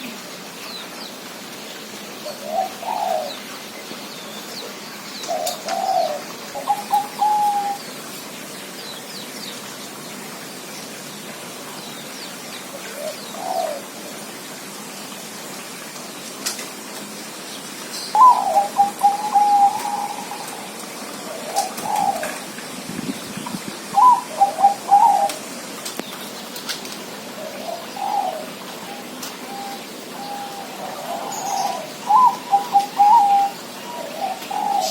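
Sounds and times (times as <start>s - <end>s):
dove cooing: 2.2s - 3.4s, 5.3s - 7.8s, 12.8s - 14.1s, 18.2s - 22.6s, 23.9s - 25.5s, 27.4s - 34.9s.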